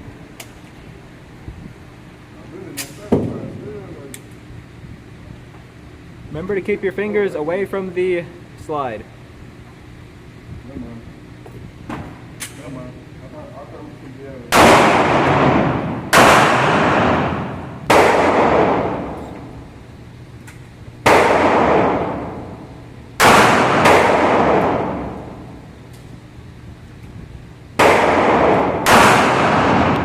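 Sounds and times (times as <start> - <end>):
gunshots with echo: 14.5 - 19.2, 21.0 - 22.6, 23.2 - 25.3, 27.8 - 30.0.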